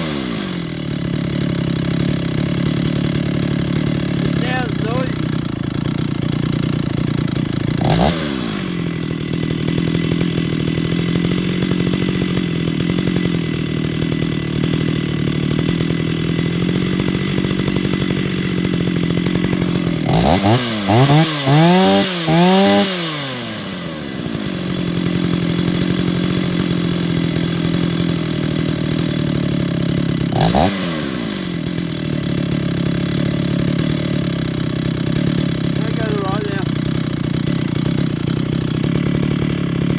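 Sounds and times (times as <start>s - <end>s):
chainsaw engine idling and revving: 0.0s - 39.9s.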